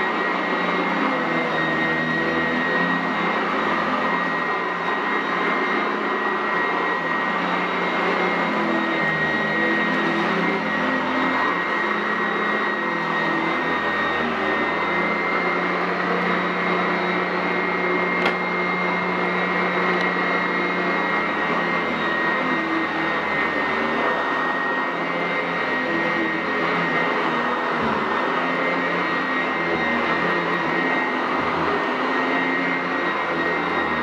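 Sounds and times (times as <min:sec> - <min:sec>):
upright vacuum running over carpet: 0:00.0 - 0:34.0.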